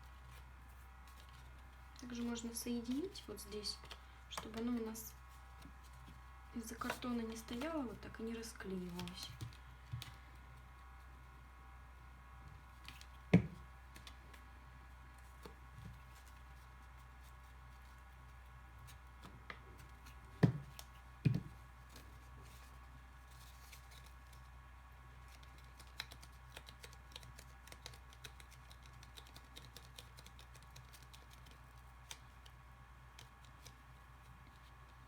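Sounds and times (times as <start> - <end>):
dull thumps on tabletop: 13.4 - 13.6
paper and cardboard clicks and taps: 25.3 - 33.8.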